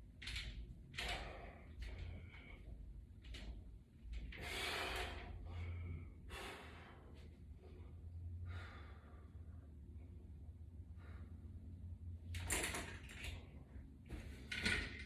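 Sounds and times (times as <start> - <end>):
person breathing hard: 4.4 - 9.8.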